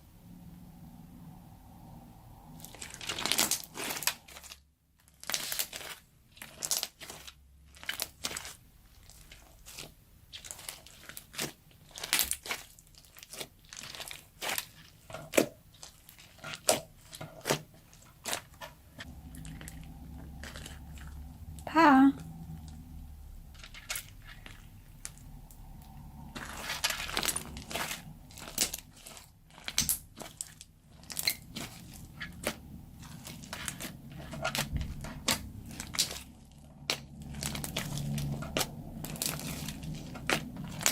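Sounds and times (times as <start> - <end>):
crunchy slime squeezed by hand: 2.6 - 21.2.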